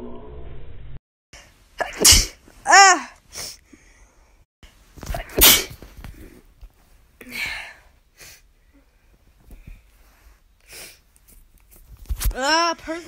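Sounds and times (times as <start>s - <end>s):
person sneezing: 1.8s - 3.6s, 5.1s - 5.8s.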